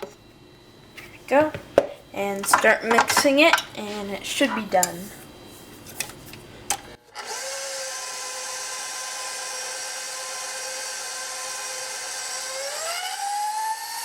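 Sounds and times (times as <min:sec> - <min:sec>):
electric mixer motor whining: 0:07.1 - 0:14.0.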